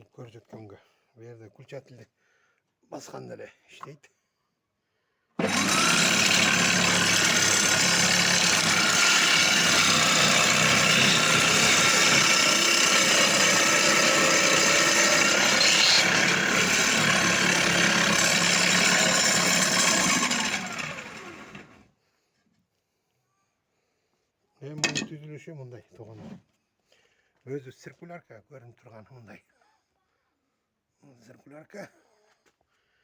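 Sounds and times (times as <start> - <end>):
drill-driven saw cutting wood: 5.4 - 21.8.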